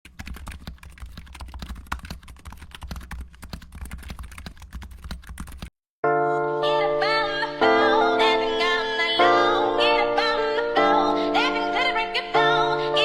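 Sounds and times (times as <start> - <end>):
fast keyboard typing: 0.0 - 5.7.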